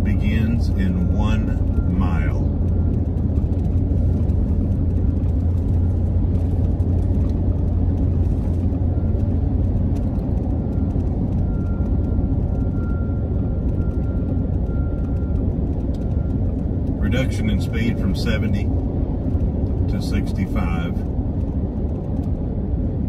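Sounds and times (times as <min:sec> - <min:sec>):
car driving at highway speed: 0:00.0 - 0:23.0.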